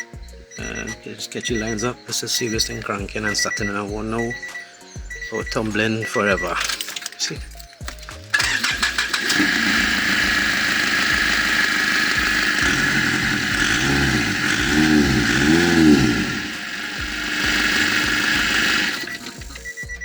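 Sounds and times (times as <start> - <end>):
diesel engine revving: 8.3 - 20.0.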